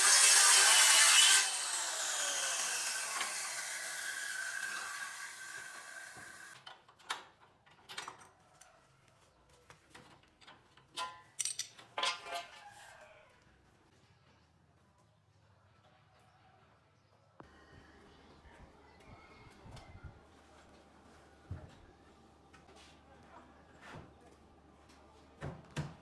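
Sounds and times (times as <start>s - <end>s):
power saw cutting wood: 0.0s - 6.6s
saw blade spinning down: 0.0s - 6.6s.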